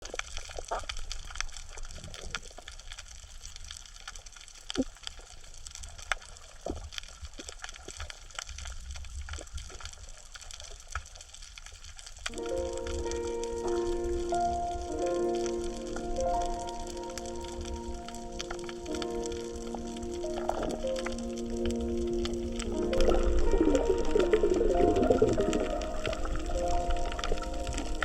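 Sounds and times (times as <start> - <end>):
low watery rumble: 0.0 - 28.0
soft music with held notes: 12.3 - 28.0.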